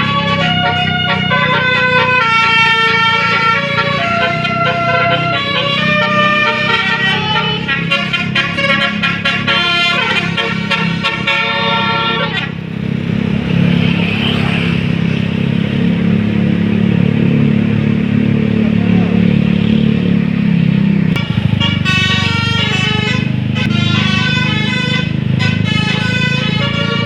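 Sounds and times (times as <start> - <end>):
multi-note bus air horn: 0.0 - 12.7, 21.2 - 27.0.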